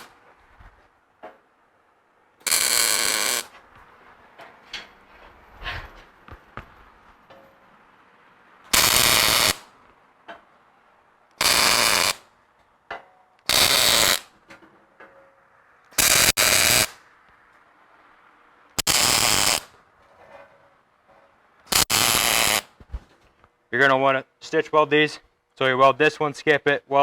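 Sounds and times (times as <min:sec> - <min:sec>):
arc welder crackling: 0:02.4 - 0:03.6, 0:08.7 - 0:10.0, 0:11.3 - 0:12.3, 0:13.4 - 0:14.4, 0:15.9 - 0:17.4, 0:18.7 - 0:20.1, 0:21.6 - 0:22.9.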